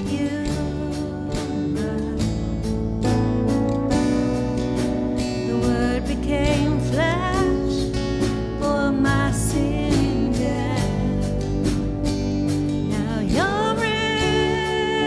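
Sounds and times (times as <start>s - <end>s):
person singing: 0.0s - 2.8s, 5.4s - 11.7s, 12.8s - 15.0s
acoustic guitar strumming: 9.7s - 15.0s.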